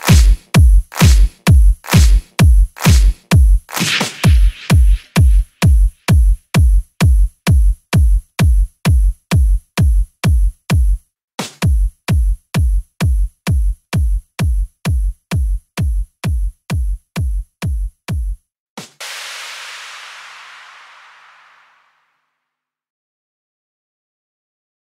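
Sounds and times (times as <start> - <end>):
electronic dance music: 0.0 - 6.7, 18.8 - 22.0
drum machine kick: 0.0 - 20.7.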